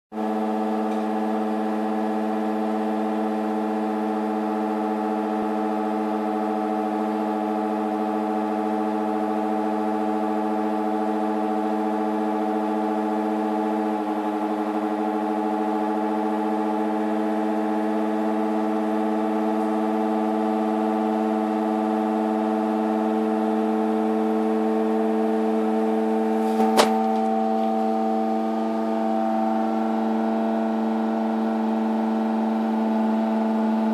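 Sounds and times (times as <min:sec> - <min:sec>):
washer dryer humming: 0:23.7 - 0:30.0.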